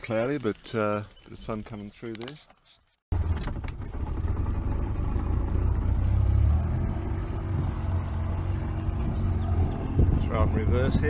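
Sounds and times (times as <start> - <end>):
outboard motor running: 3.1 - 11.0.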